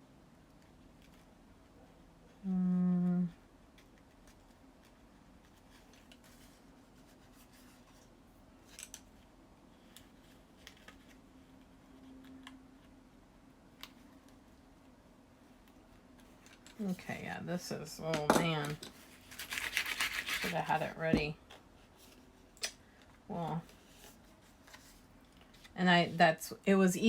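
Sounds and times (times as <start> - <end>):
person humming: 2.4 - 3.4
paper pieces clicking and scratching: 19.2 - 20.6.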